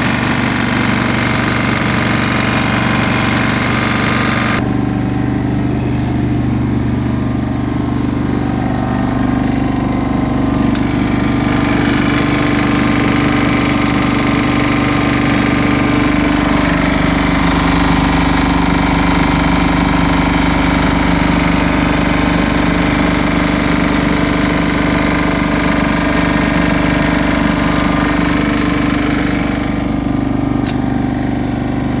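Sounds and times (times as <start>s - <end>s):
generator engine running: 0.0s - 32.0s
sharp click: 30.6s - 30.9s.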